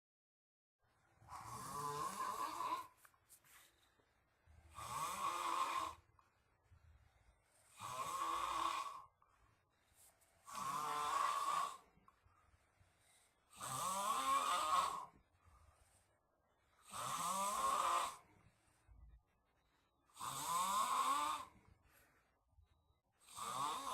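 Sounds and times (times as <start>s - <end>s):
person snoring: 1.2s - 3.0s, 4.7s - 6.2s, 7.6s - 9.2s, 10.4s - 11.9s, 13.3s - 15.1s, 16.7s - 18.3s, 20.1s - 21.6s, 23.2s - 23.9s.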